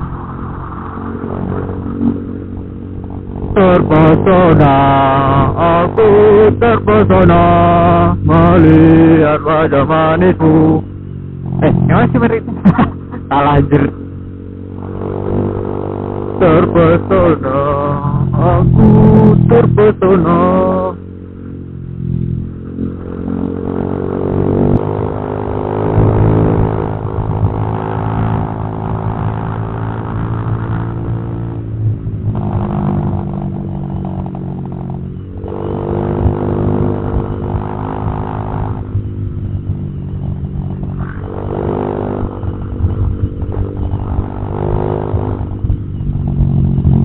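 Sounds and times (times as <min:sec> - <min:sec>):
scooter engine revving: 0:10.9 - 0:47.0.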